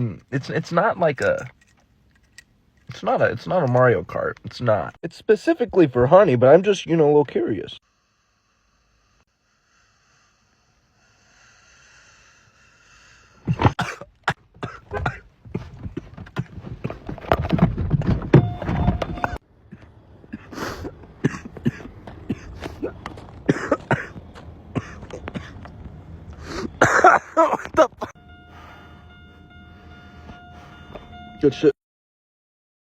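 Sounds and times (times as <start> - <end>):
person coughing: 13.5 - 17.0, 19.7 - 24.2, 24.8 - 25.6, 26.5 - 28.2.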